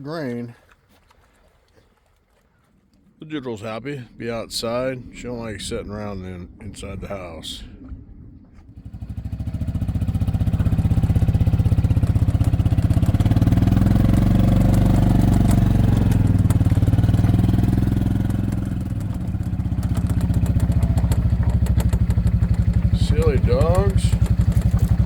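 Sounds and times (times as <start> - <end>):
engine running: 8.8 - 25.0.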